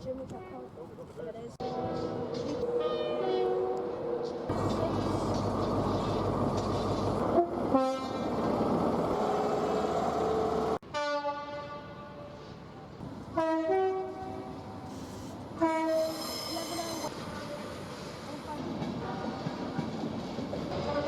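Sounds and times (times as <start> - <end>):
two-tone train horn blasts: 1.6 - 4.2, 7.2 - 8.3, 10.8 - 12.4, 13.3 - 14.6, 15.6 - 16.8, 20.7 - 21.0
train running noise: 1.6 - 10.8, 12.3 - 21.0.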